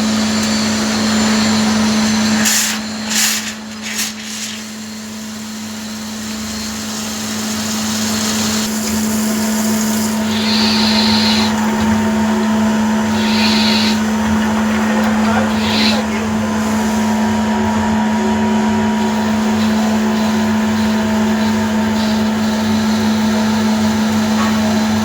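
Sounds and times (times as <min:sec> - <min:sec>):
lathe machine hum: 0:04.4 - 0:25.0
short high hissing bursts: 0:09.8 - 0:11.6, 0:13.1 - 0:14.0.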